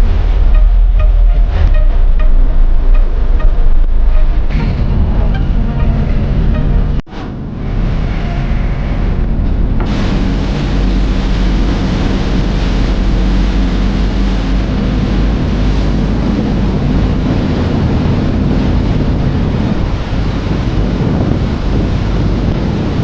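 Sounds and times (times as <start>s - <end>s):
boat engine rumble: 0.0s - 23.0s
wind buffeting microphone: 0.0s - 23.0s
rushing water: 9.3s - 23.0s.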